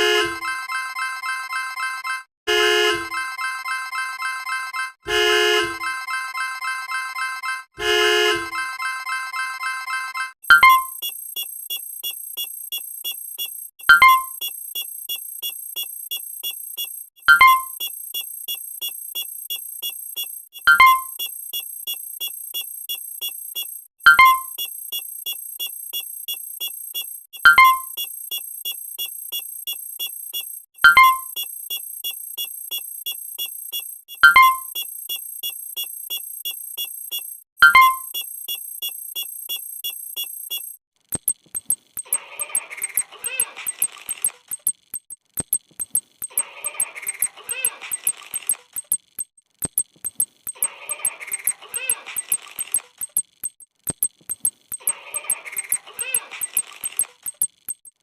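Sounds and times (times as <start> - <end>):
quick high ticks: 10.5 - 58.0
thin high steady tone: 10.5 - 58.0.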